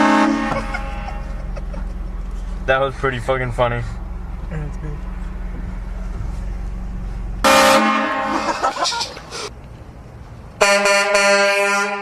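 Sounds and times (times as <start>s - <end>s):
train horn blast: 0.0s - 1.2s, 7.4s - 8.5s, 10.6s - 12.0s
engine running low hum: 0.0s - 11.7s.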